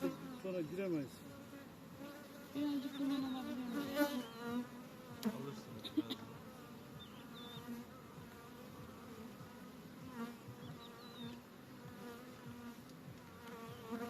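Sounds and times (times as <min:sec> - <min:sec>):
honeybees buzzing: 0:00.0 - 0:14.0.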